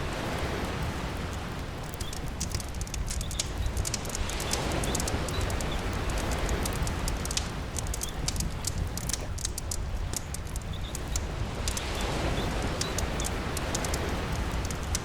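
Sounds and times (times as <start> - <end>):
campfire crackling and popping: 0.0 - 15.0
rain: 0.0 - 15.0
sea surf: 11.4 - 15.0.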